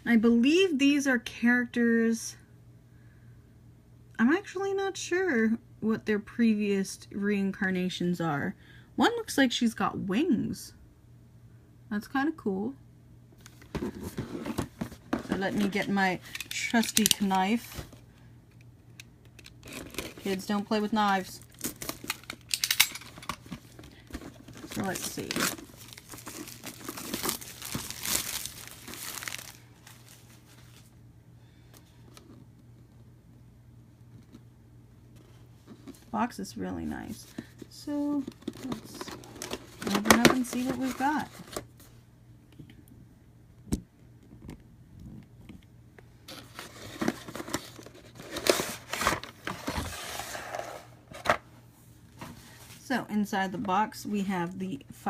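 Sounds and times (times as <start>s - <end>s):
plastic wrapping crinkling and tearing: 19.4s - 30.9s.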